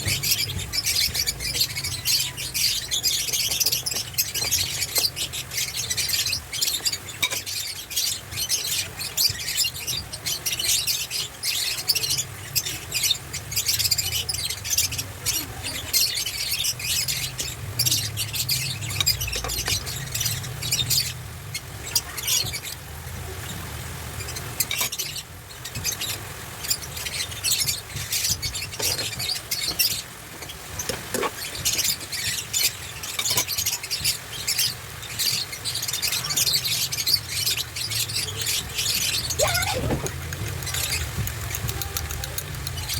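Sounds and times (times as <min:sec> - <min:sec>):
food sizzling in hot oil: 0:15.8 - 0:41.7.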